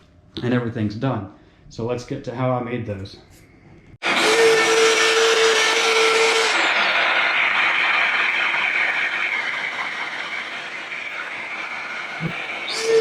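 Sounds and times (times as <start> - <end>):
power tool humming: 4.0 - 13.0.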